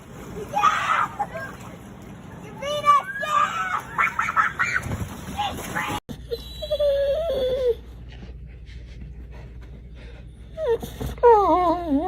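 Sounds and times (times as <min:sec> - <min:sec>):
dog whining: 0:06.1 - 0:07.9, 0:10.5 - 0:12.0.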